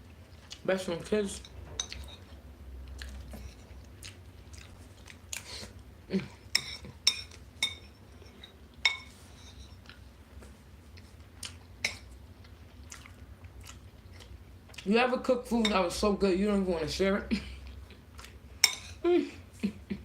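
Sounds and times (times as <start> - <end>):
person chewing: 0.1 - 0.7, 1.8 - 7.5, 9.6 - 14.9, 17.6 - 19.0
cutlery clinking against a dish: 6.5 - 9.8, 18.6 - 19.0.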